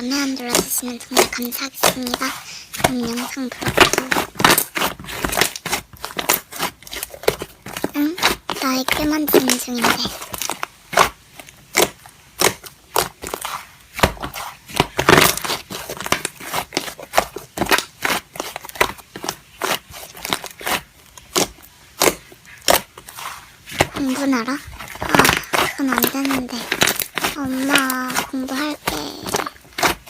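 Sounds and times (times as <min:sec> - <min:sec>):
slime clicking and popping: 0:03.1 - 0:13.4, 0:14.0 - 0:23.0.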